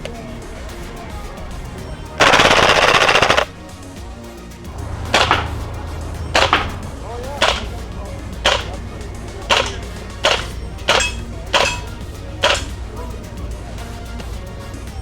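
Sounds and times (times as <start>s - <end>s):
airsoft gun shots: 2.2s - 3.5s, 5.1s - 12.8s.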